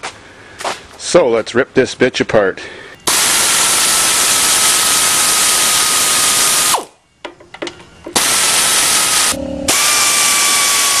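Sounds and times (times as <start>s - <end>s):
power tool whining hiss: 3.0s - 7.0s, 8.0s - 11.0s.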